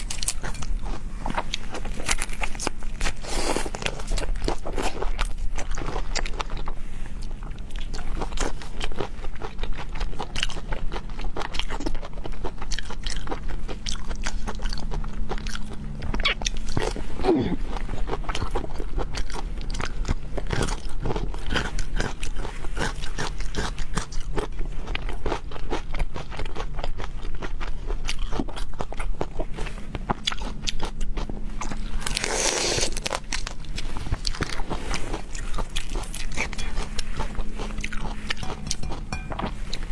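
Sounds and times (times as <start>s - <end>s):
crunchy biting and wet chewing: 0.0s - 39.9s
low electrical hum: 0.0s - 39.9s
loud crunch or slurp: 32.1s - 33.2s.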